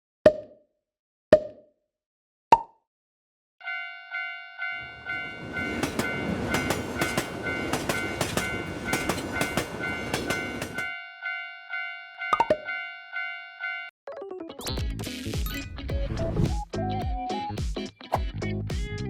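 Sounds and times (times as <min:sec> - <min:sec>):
level crossing alarm dinging: 0:03.6 - 0:13.9
train wheels clattering: 0:05.1 - 0:10.9.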